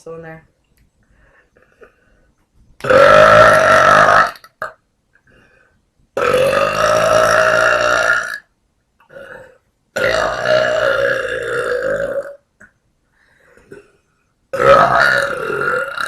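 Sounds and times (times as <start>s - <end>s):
woman burping: 2.8s - 4.8s.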